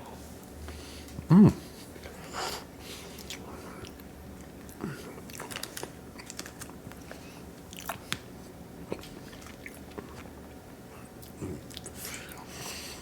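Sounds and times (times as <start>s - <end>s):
person chewing: 3.1s - 10.5s.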